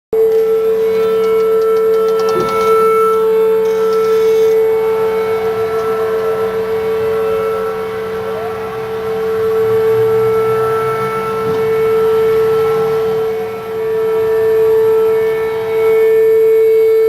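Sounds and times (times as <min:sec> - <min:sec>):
tornado warning sirens: 0:00.2 - 0:17.0.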